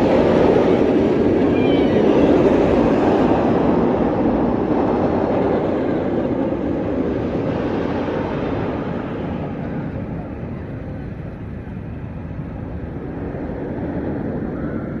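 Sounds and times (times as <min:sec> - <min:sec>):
roller coaster roaring on track: 0:00.0 - 0:15.0.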